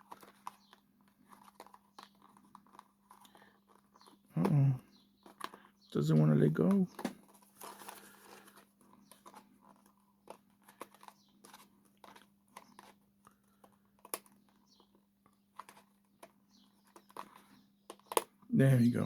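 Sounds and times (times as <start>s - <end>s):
plastic package clicks and crinkles: 0.0s - 4.3s, 4.9s - 6.0s, 6.6s - 18.5s.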